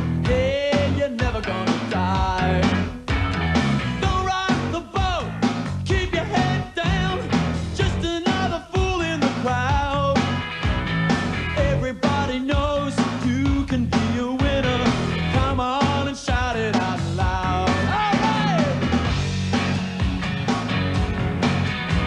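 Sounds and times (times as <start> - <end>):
bass: 0.0 - 22.0
rock music with steady beat: 0.0 - 22.0
person singing: 0.2 - 3.0, 4.0 - 10.4, 11.6 - 18.9.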